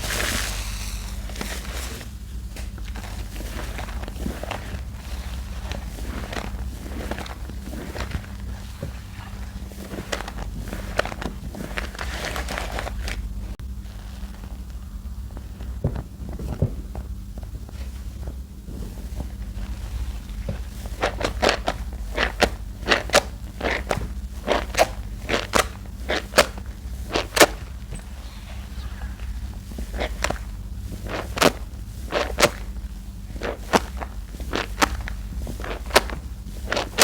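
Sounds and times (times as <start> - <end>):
hands squelching soap paste: 0.0 - 13.2
steady low hum: 0.0 - 37.0.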